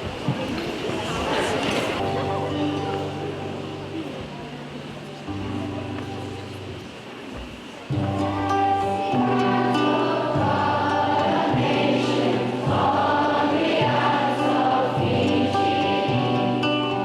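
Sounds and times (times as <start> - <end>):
choir singing sustained chords: 8.0 - 17.0.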